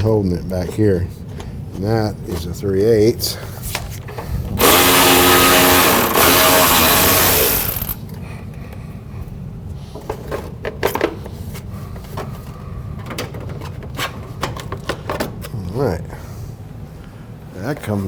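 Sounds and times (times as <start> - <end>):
power wrench whirring: 4.6 - 8.0.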